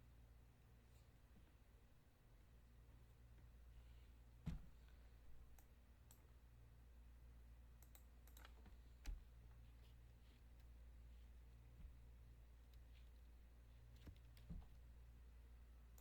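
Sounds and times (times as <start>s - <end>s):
faint clicks: 7.8s - 8.7s.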